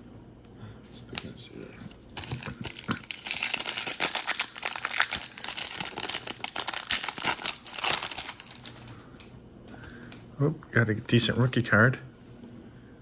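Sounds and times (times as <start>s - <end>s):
plastic wrapper crinkling: 2.1s - 9.0s.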